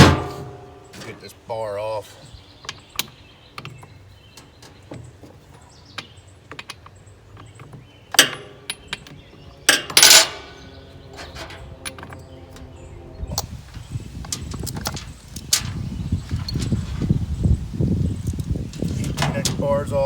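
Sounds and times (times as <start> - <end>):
sharp metal clank: 0.0 - 1.0, 9.7 - 12.2
metallic rattle: 0.0 - 1.2, 6.5 - 12.8, 13.6 - 20.0
small metal clicks: 5.9 - 12.7.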